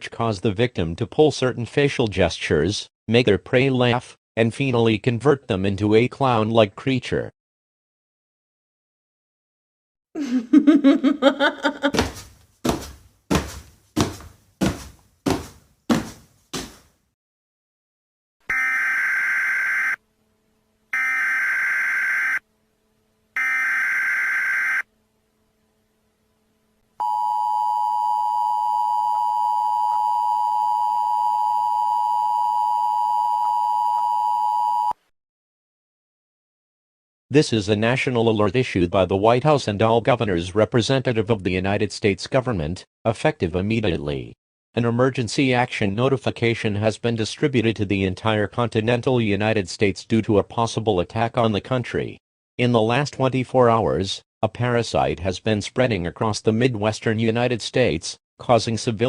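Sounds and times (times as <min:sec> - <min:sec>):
person laughing: 0:10.2 - 0:12.2.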